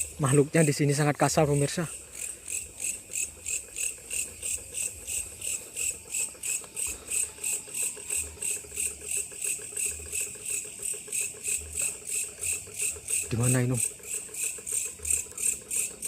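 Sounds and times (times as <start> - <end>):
insect chirping: 0.0 - 16.0.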